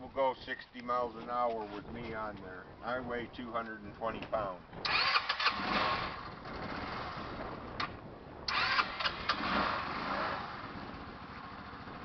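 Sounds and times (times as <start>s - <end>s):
scooter engine running: 4.9s - 7.7s, 8.5s - 12.0s.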